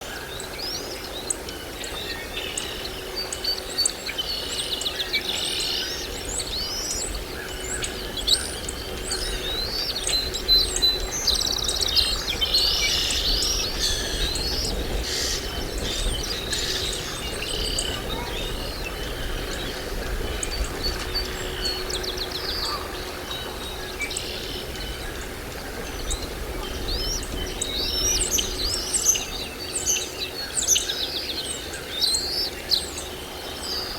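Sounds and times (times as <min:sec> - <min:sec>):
birds chirping: 0:00.1 - 0:33.9
low background rumble: 0:05.9 - 0:30.7.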